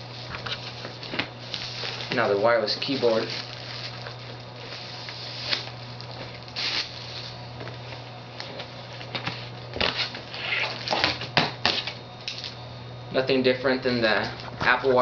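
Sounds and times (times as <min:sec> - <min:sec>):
steady low hum: 0:00.0 - 0:15.0
packaging rustling and crinkling: 0:00.2 - 0:07.4.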